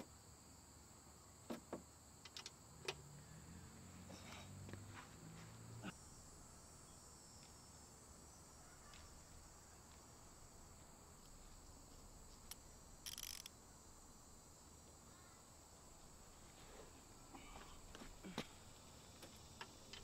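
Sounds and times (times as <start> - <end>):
insects chirring: 0.0 - 20.0.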